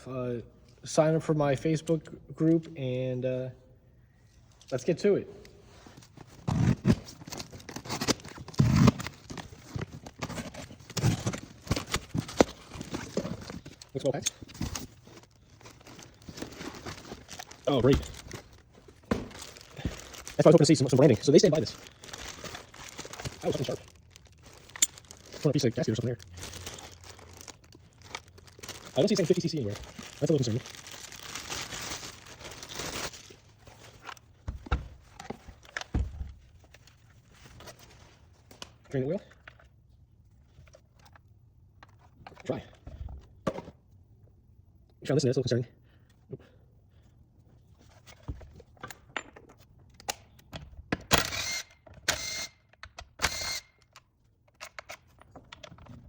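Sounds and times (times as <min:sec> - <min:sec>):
packing rustling: 0:05.8 - 0:38.2
heavy thumps: 0:19.0 - 0:20.2.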